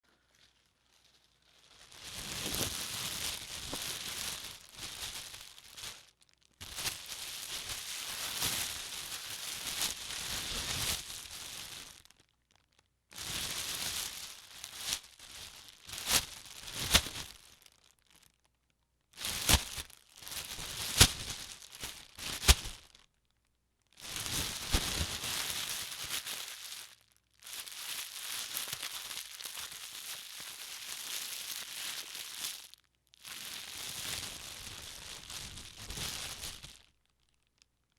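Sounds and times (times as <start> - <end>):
plastic bag crinkling: 0.1 - 18.5, 19.2 - 23.3, 24.0 - 37.9
sharp plastic crackles: 15.2 - 27.6, 34.9 - 37.9.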